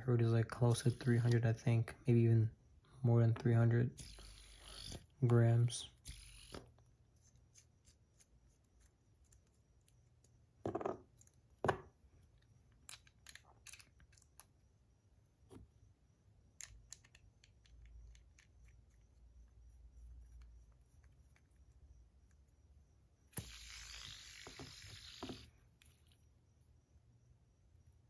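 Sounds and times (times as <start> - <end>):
fidget spinner clicks and taps: 23.4 - 26.0.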